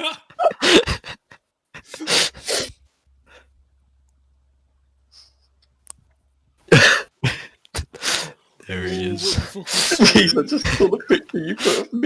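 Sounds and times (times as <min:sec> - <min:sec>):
person's harsh breath bursts: 0:01.9 - 0:02.8.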